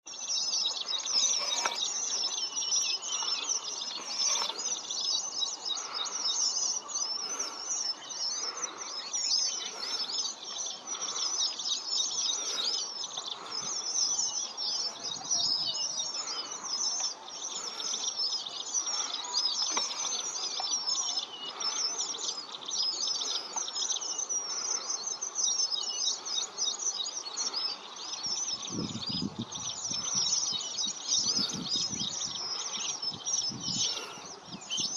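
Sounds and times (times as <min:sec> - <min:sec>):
flock of birds chirping: 0:00.0 - 0:34.9.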